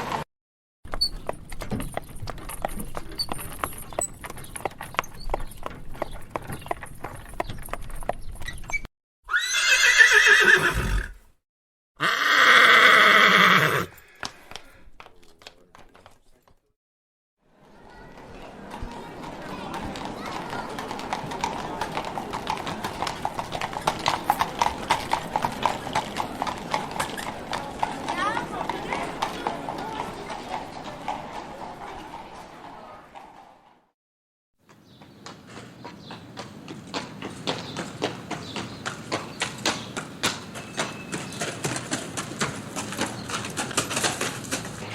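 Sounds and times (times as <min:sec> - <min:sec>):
horse hooves clip-clopping: 0:00.9 - 0:08.9, 0:13.7 - 0:16.7, 0:18.1 - 0:33.6, 0:34.7 - 0:44.9
horse whinnying: 0:09.3 - 0:11.3, 0:12.0 - 0:14.0.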